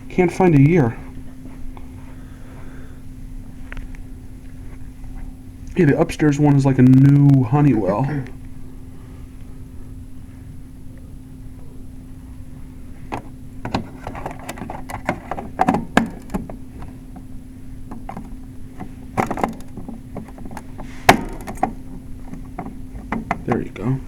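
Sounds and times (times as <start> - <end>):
steady low hum: 0.0 - 24.0
knocks and clatter of handling: 12.9 - 24.0.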